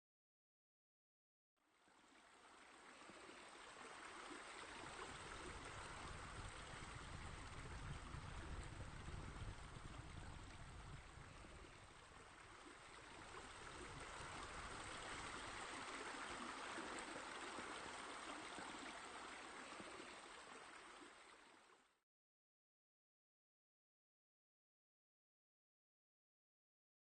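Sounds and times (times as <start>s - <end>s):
faint running water: 1.6s - 22.0s.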